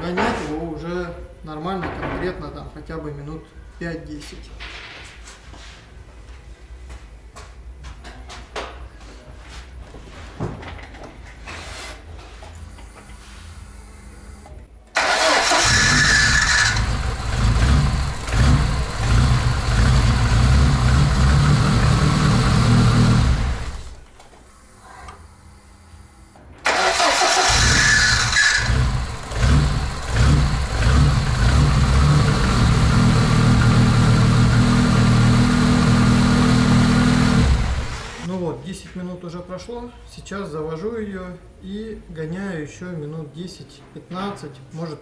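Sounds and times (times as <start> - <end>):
car engine idling: 15.0 - 24.0, 26.7 - 38.3
car engine cranking and starting: 15.0 - 24.1, 26.6 - 38.3.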